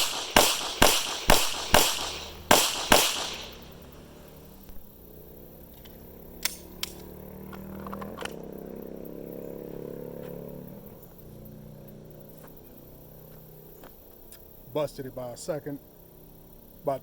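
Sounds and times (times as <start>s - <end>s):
pistol shots: 0.0s - 3.8s
low steady drone: 0.0s - 7.3s.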